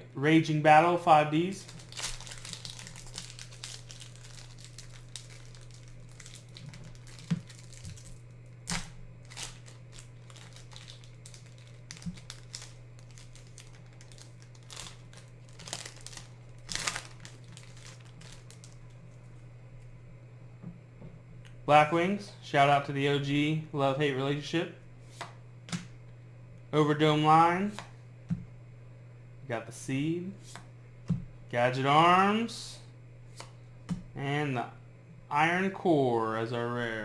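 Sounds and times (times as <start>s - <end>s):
steady low hum: 0.0s - 37.0s
foil wrapper crinkling and tearing: 1.6s - 19.0s.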